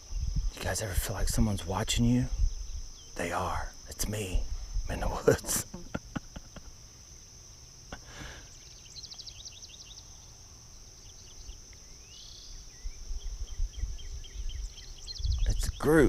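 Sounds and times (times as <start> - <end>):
insects droning: 0.0 - 16.0
bird chirping: 8.1 - 16.0.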